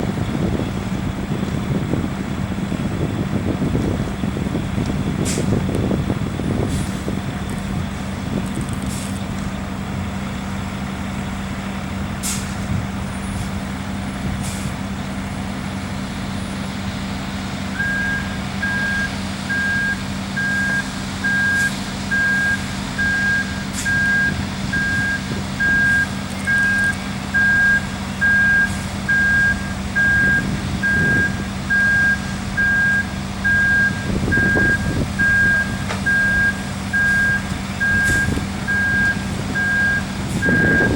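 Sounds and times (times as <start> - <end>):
truck diesel engine running: 0.0 - 40.9
reversing alarm beeping: 17.8 - 40.9.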